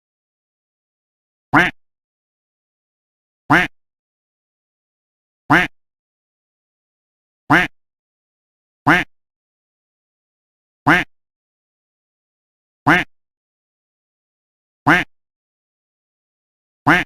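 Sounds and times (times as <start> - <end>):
duck quacking: 1.6 - 1.8, 3.5 - 3.7, 5.5 - 5.7, 7.5 - 7.7, 8.9 - 9.1, 10.9 - 11.1, 12.9 - 13.1, 14.9 - 15.1.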